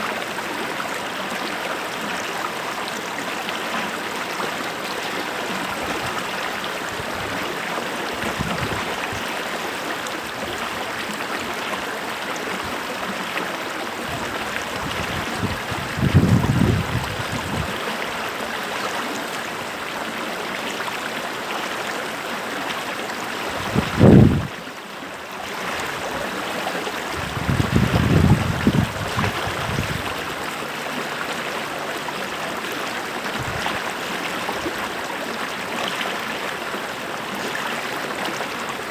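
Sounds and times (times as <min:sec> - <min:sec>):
stream water running: 0:00.0 - 0:38.9.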